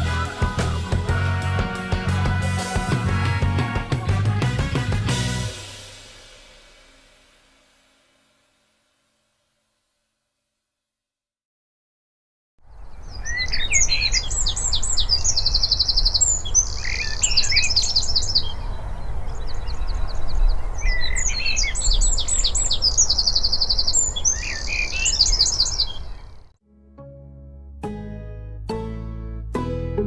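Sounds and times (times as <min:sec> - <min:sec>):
wren singing: 0:12.6 - 0:26.5.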